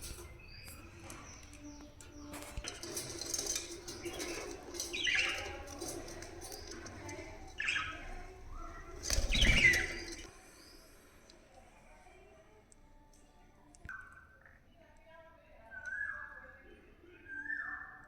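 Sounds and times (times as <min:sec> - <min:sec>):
budgerigars chirping: 0:08.9 - 0:10.3.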